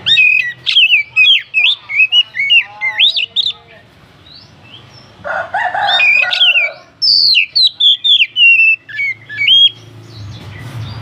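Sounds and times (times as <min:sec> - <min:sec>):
bird singing whistled notes: 0:00.0 - 0:03.6, 0:06.0 - 0:11.0.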